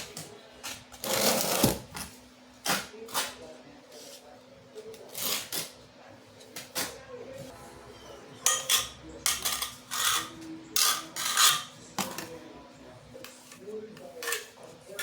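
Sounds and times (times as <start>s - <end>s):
metal trowel scraping mortar: 8.5s - 11.8s.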